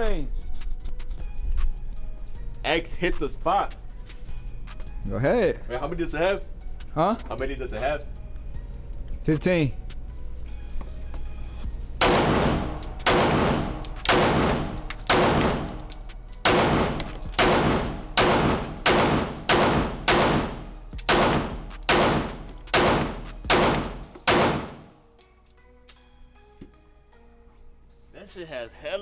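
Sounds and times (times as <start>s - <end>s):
handgun shots with echo: 12.0s - 25.0s.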